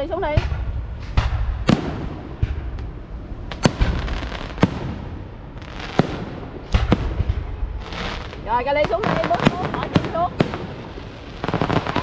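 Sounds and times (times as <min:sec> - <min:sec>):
low rumble: 0:00.0 - 0:09.3
fireworks cracking and popping: 0:00.1 - 0:12.0.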